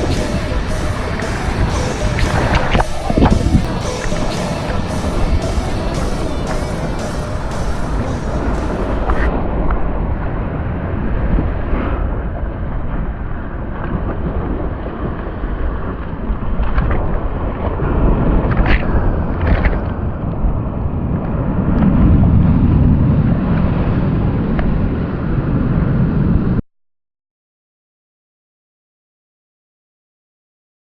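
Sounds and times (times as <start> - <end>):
low rumbling noise: 0.0 - 26.6.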